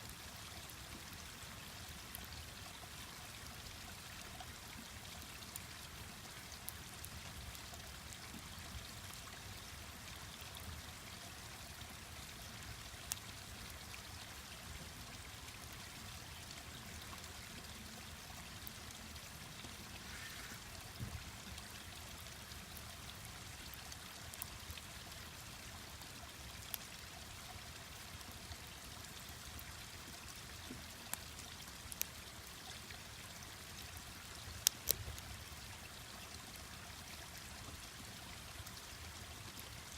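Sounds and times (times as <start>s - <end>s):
campfire crackling and popping: 34.4s - 35.4s.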